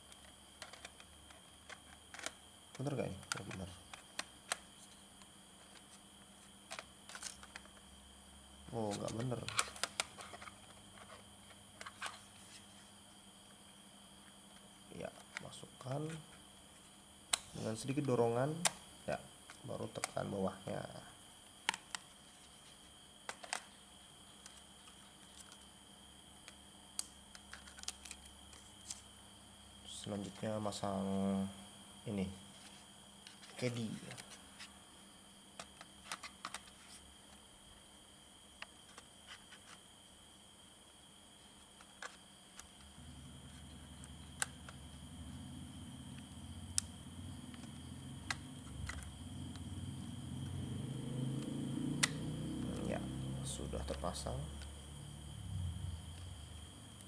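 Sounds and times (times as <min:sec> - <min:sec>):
sharp plastic clicks: 0:51.9 - 0:52.9.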